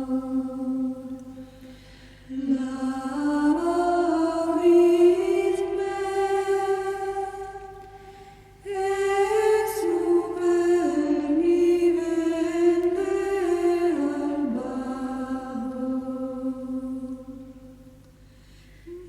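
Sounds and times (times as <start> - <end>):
slow calm music: 8.6 - 18.0.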